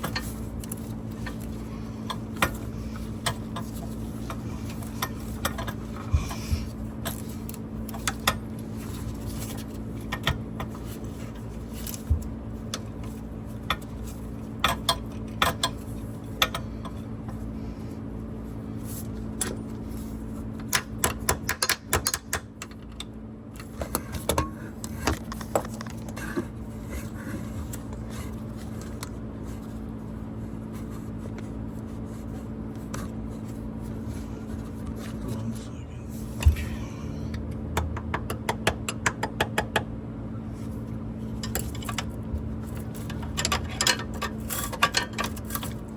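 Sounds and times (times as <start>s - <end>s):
steady low hum: 0.0s - 45.9s
metal tools clinking and scraping: 41.4s - 45.8s.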